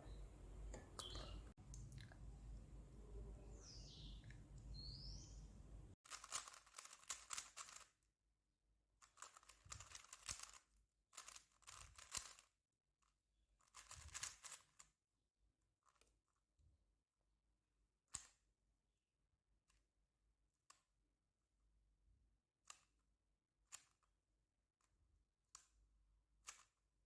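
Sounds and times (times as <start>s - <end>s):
low steady hum: 0.0s - 6.0s
rapid clicking and rustling: 6.1s - 8.0s, 9.0s - 12.5s, 13.6s - 14.8s.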